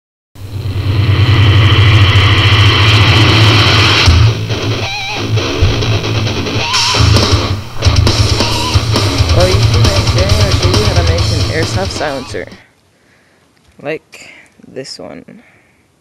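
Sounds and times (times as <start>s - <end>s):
heavy metal rock music: 0.4s - 12.6s.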